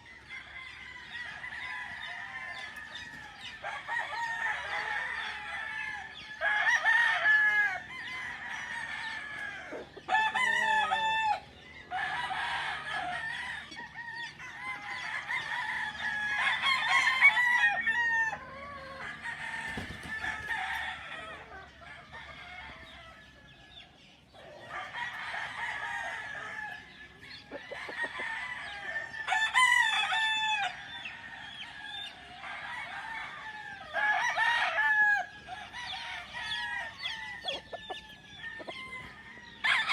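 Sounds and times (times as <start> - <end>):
chickens clucking: 0.0 - 39.9
roosters crowing: 0.0 - 39.9.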